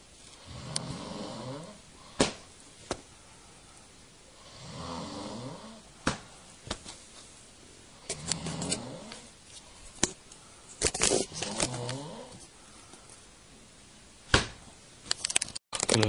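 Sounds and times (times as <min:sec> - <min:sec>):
man snoring: 0:00.4 - 0:01.8, 0:04.4 - 0:05.9, 0:08.2 - 0:09.3, 0:11.4 - 0:12.4
sharp short smacks: 0:02.2 - 0:03.0, 0:06.0 - 0:07.0.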